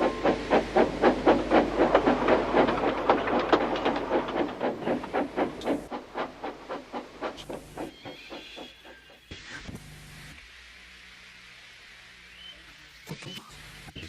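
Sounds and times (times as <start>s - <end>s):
hiss of steam: 0.0s - 3.4s
steam locomotive chuffing: 0.0s - 9.3s.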